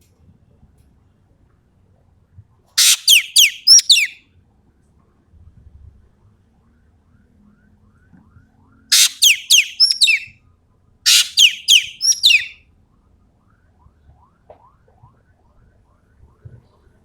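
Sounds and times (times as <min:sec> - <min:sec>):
bird down-slurred whistled notes: 0:02.8 - 0:04.2, 0:08.9 - 0:10.3, 0:11.1 - 0:12.6
bird harsh rasping call: 0:02.8 - 0:04.2, 0:08.9 - 0:10.3, 0:11.1 - 0:12.5.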